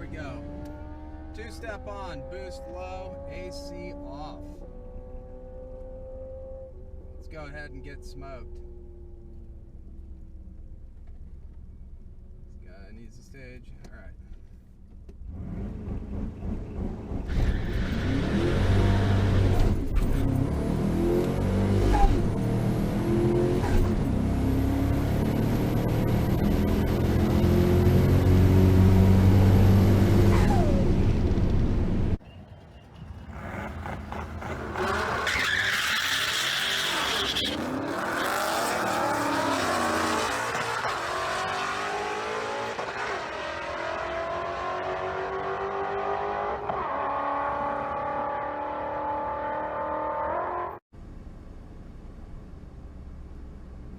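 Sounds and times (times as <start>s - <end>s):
engine accelerating: 15.2s - 50.8s
engine pitch sweeping: 20.2s - 50.8s.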